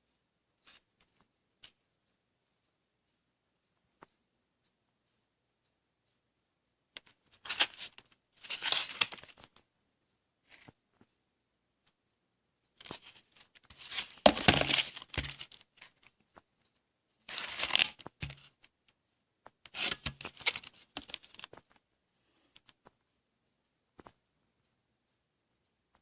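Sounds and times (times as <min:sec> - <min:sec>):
small clicks and taps: 0:14.9 - 0:21.9, 0:22.5 - 0:23.1, 0:23.9 - 0:24.3
packaging tearing and crinkling: 0:17.3 - 0:18.0.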